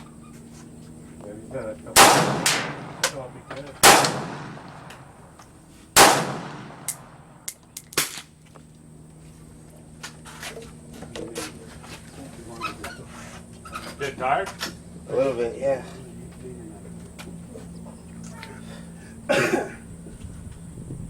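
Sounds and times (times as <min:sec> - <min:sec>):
rifle shots with echo: 0:02.0 - 0:05.4, 0:06.0 - 0:08.1.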